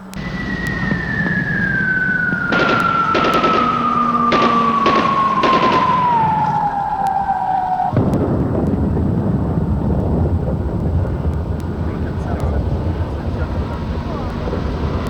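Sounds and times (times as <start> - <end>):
falling whistle of diving aircraft: 0.0 - 15.0
rumbling explosion: 0.0 - 15.0
machine-gun bursts: 2.5 - 7.0.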